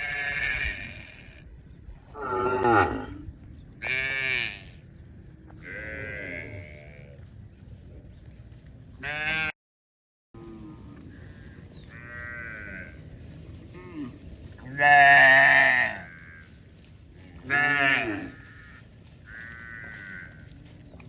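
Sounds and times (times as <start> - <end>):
livestock calling: 2.1 - 4.8, 11.0 - 13.0, 17.4 - 20.6.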